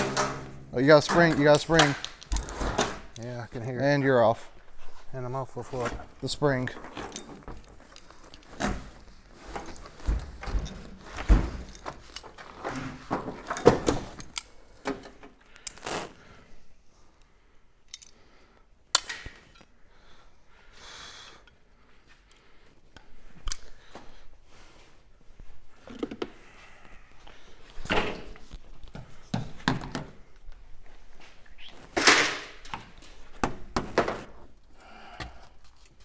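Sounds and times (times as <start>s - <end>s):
metal parts and tools clattering: 0.0s - 3.4s, 5.8s - 15.2s.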